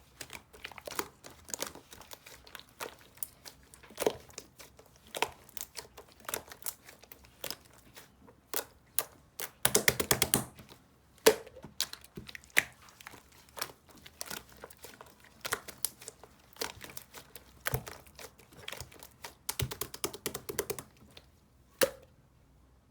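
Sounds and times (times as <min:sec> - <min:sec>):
slime squished by hand: 0:00.0 - 0:22.1
sticky clicks and bubble pops: 0:09.6 - 0:10.5, 0:19.5 - 0:20.9.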